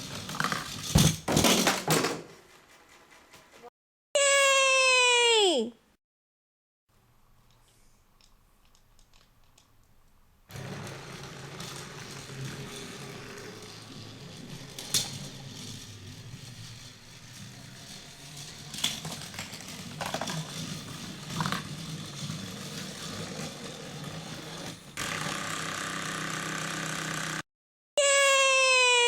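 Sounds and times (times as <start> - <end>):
toy train motor whirring: 10.6 - 27.4.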